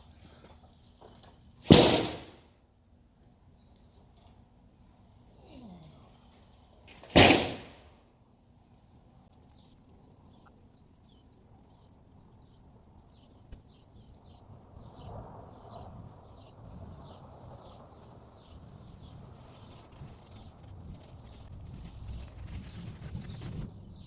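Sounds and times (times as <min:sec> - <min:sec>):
birds chirping: 0:08.4 - 0:20.6.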